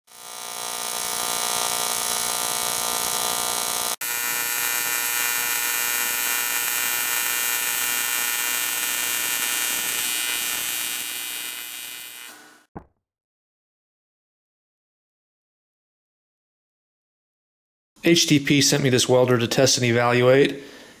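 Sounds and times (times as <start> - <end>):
welding arc buzzing: 0.1 - 12.7.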